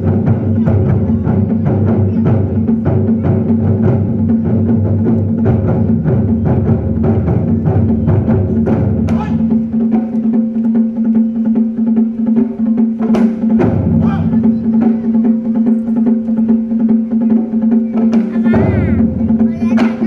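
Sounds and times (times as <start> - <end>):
drum ensemble playing: 0.0 - 20.0.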